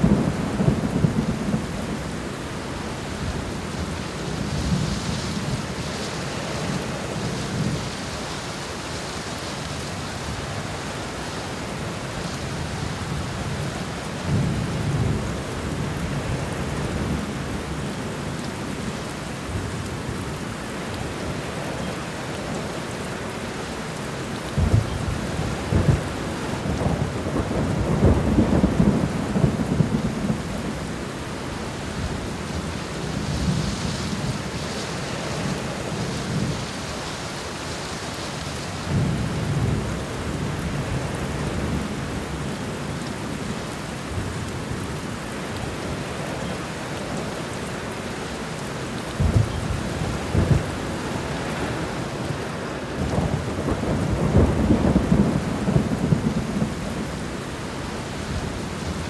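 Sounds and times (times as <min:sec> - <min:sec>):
steady rain: 0:00.0 - 0:59.0
rolling thunder: 0:24.6 - 0:31.0, 0:49.1 - 0:52.4, 0:53.0 - 0:59.0.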